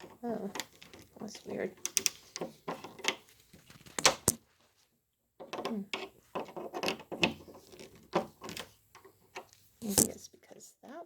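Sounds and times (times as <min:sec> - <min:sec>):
lock mechanism scraping and clicking: 0:00.0 - 0:03.3, 0:05.6 - 0:10.1
lock clicking: 0:04.0 - 0:04.4.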